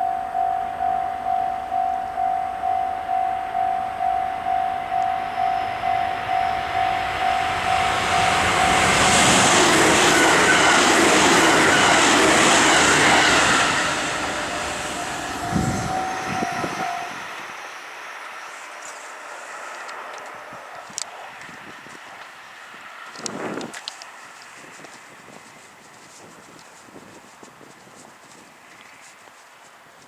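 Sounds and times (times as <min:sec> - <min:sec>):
level crossing bell ringing: 0:00.0 - 0:09.3, 0:12.9 - 0:17.3
train wheels rushing on rail: 0:00.0 - 0:30.0.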